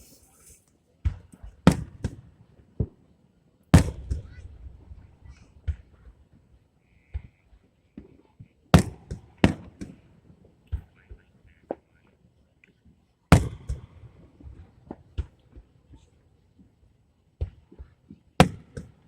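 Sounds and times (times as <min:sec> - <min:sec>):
small fireworks pops: 0:12.6 - 0:16.8, 0:17.4 - 0:19.0.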